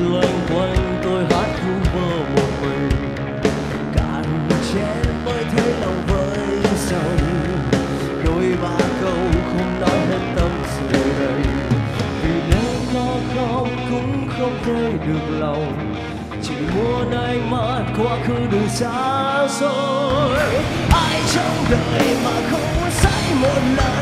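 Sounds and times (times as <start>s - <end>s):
rock band playing live: 0.0s - 24.0s
drum beat: 20.4s - 24.0s.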